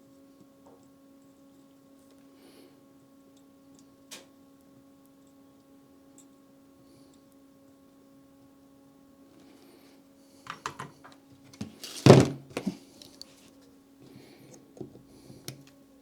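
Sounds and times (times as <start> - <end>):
faint steady hum: 0.0 - 16.0
thunk on a workbench: 11.6 - 12.8.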